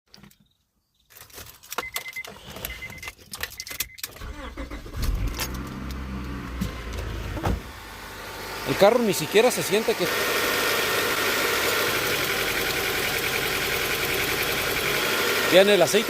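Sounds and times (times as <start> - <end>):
keys jangling and clicking: 1.1 - 4.2
car engine starting and idling: 2.2 - 16.0.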